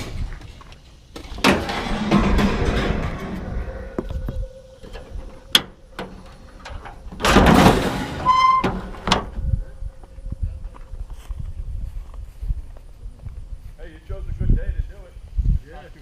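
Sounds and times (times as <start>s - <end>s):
door clicks and clunks: 1.2s - 4.1s
door scraping rush: 1.2s - 9.4s
door squeak: 1.5s - 9.6s.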